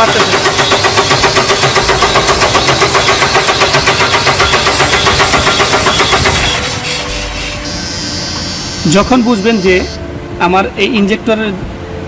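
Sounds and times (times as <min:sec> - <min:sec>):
starter motor cranking diesel engine: 0:00.0 - 0:07.5
steady hum: 0:00.0 - 0:12.0.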